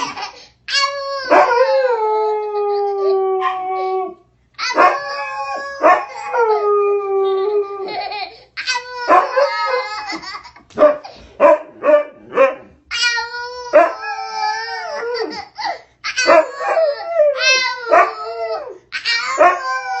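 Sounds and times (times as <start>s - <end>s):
dog howling: 1.3s - 7.7s, 9.0s - 10.0s, 13.7s - 15.4s, 16.2s - 20.0s
dog barking and yipping: 4.7s - 5.1s, 5.8s - 6.2s, 9.1s - 9.7s, 10.8s - 12.8s, 13.7s - 14.1s, 16.2s - 18.2s.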